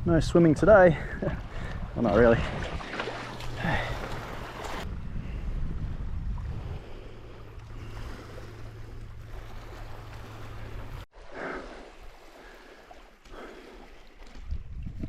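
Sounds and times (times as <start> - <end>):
wind: 0.0 - 15.0
water lapping: 0.9 - 15.0
boat engine running: 2.6 - 11.0.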